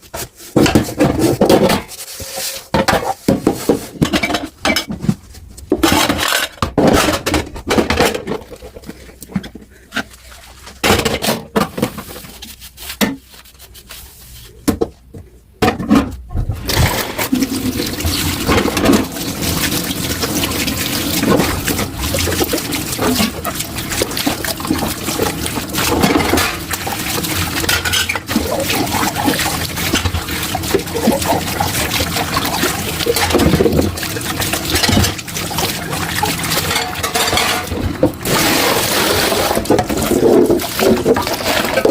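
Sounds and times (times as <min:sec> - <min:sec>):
dishes clinking in a sink: 0:02.8 - 0:05.0, 0:27.6 - 0:29.2, 0:34.6 - 0:35.3, 0:36.0 - 0:38.2.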